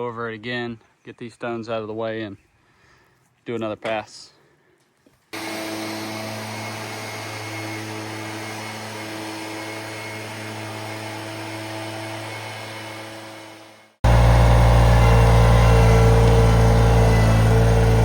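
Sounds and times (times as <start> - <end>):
skid steer engine running: 14.0 - 18.0.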